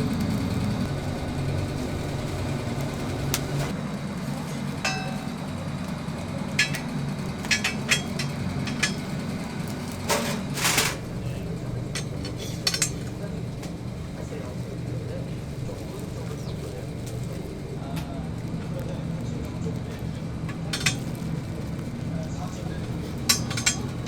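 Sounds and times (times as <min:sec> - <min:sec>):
steady low hum: 0:00.0 - 0:24.0
sharp clicks and knocks: 0:06.6 - 0:09.2.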